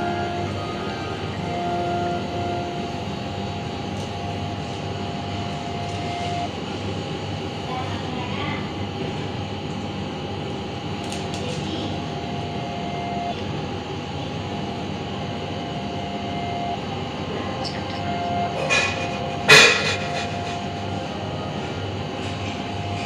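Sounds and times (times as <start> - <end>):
mechanical hum: 0.0 - 23.0.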